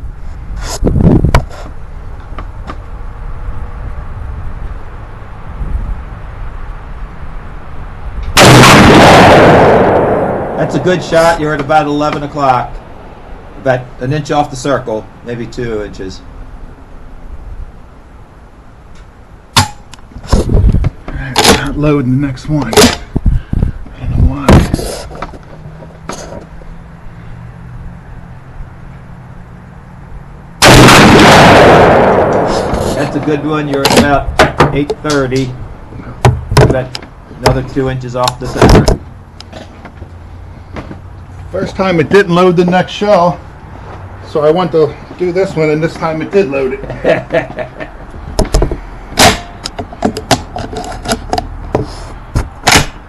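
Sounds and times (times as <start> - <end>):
shotgun shot: 8.4 - 11.2, 30.6 - 34.1, 49.2 - 49.5, 52.6 - 53.0.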